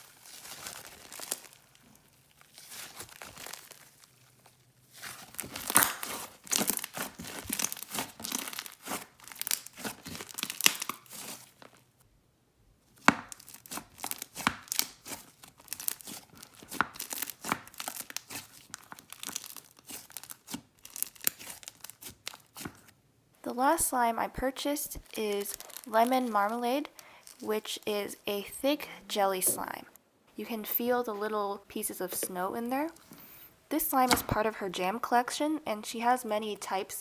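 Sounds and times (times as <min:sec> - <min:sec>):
slime squishing and popping: 0:00.0 - 0:11.8, 0:13.0 - 0:22.9, 0:25.0 - 0:26.5.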